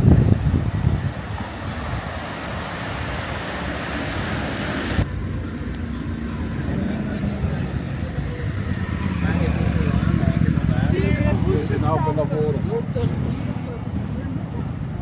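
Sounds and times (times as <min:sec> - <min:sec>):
wind thumps on microphone: 0:00.0 - 0:05.1
low engine hum: 0:00.0 - 0:15.0
tyre hiss on wet road: 0:01.2 - 0:05.0.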